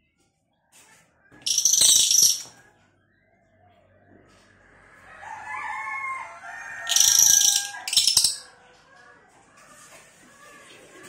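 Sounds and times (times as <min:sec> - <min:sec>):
bird singing: 0:06.9 - 0:08.5.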